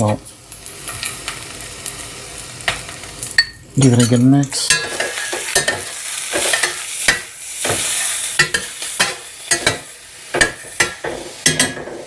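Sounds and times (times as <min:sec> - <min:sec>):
vegetables sizzling in oil: 0:00.0 - 0:12.0
utensil knocking and scraping pot: 0:03.4 - 0:12.0.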